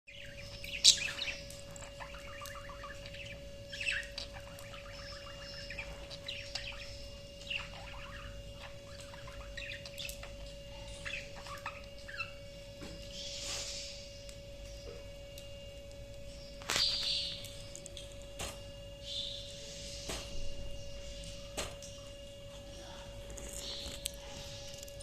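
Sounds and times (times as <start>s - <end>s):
parrot chirping and calling: 0.1s - 12.4s.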